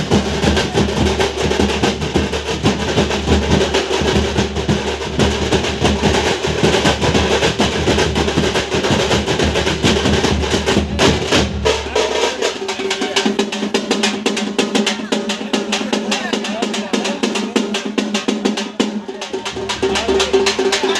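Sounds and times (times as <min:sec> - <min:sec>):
deep bass drum: 0:00.0 - 0:12.2, 0:19.2 - 0:20.9
fast dense drumming: 0:00.0 - 0:20.9.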